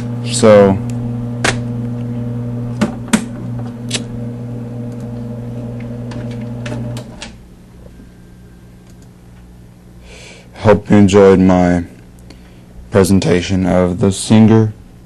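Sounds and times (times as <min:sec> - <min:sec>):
projector motor humming: 0:00.0 - 0:10.0.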